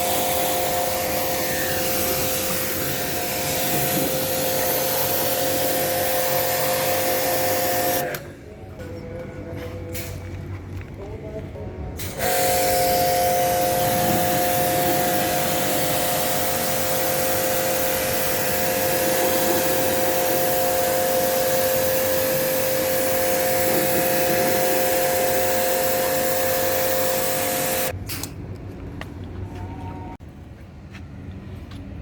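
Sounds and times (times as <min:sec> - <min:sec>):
pressure washer spraying water: 0:00.0 - 0:08.2, 0:12.0 - 0:28.3.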